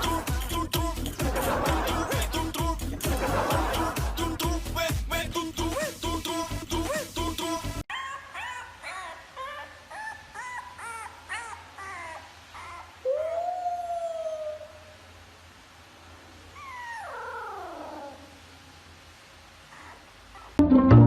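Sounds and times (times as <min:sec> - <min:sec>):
dog whimpering and yipping: 0:07.9 - 0:14.9, 0:16.5 - 0:18.3, 0:19.7 - 0:20.6
dog howling: 0:07.9 - 0:15.0, 0:16.6 - 0:18.4
dog whining: 0:07.9 - 0:15.0, 0:16.5 - 0:18.4, 0:19.7 - 0:20.6.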